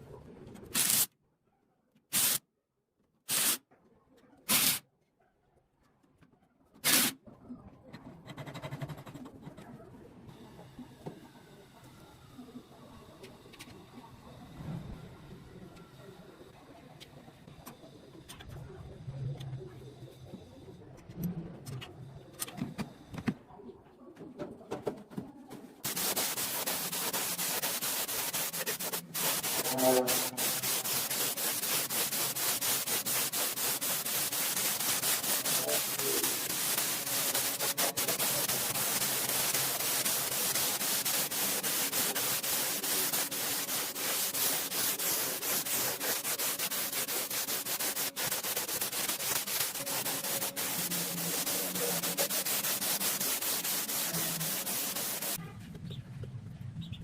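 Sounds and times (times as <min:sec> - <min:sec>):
abrasive rubbing on hard surface: 0:25.8 - 0:55.4.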